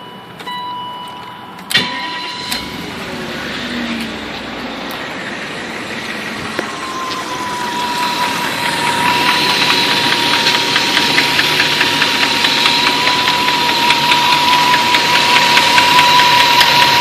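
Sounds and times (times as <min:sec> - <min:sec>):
steady high whine: 0:00.0 - 0:17.0
car engine idling: 0:01.7 - 0:17.0
rapid valvetrain ticking: 0:08.2 - 0:17.0.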